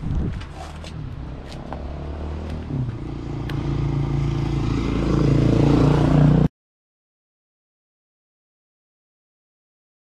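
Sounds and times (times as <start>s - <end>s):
motor vehicle engine running: 0.0s - 6.5s.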